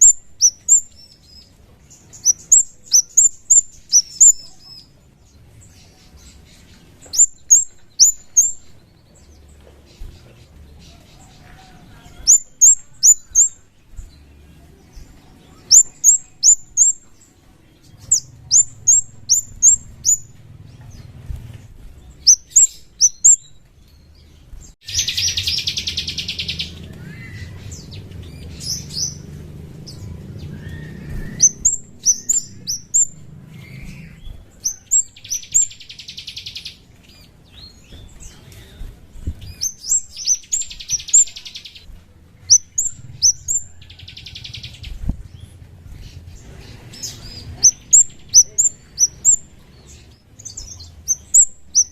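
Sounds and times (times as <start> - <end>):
buzzy rattling bird trill: 0.0 - 38.4, 39.0 - 51.9
bird high chirps: 0.0 - 51.9.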